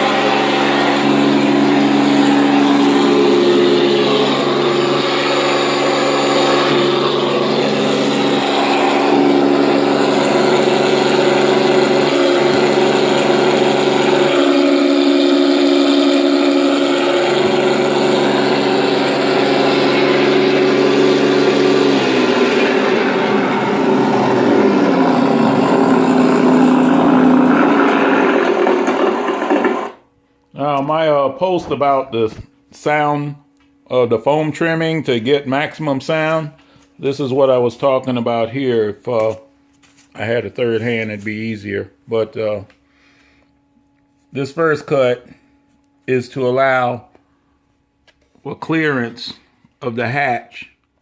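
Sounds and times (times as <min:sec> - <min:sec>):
simulated piston engine sound: 0:00.0 - 0:30.0.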